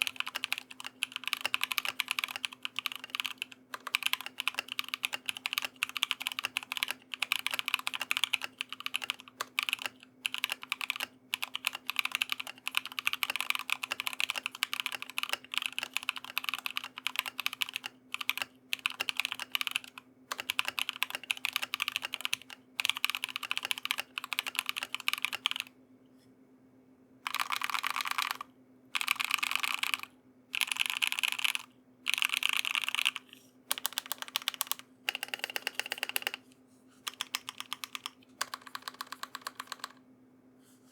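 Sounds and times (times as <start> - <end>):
fast typing on mechanical keyboard: 0.0 - 25.7, 27.3 - 36.4, 37.1 - 40.0.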